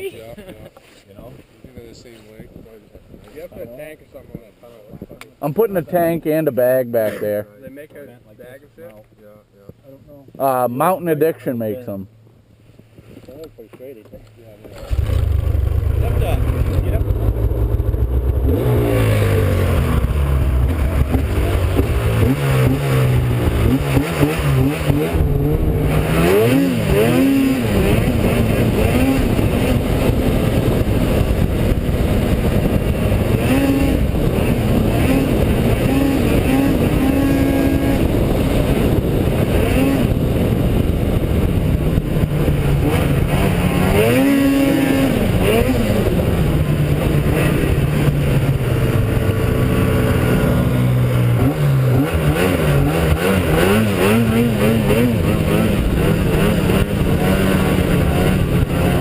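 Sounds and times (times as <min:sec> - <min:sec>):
steady rushing noise: 0:14.4 - 0:59.0
snowmobile engine revving: 0:14.7 - 0:59.0.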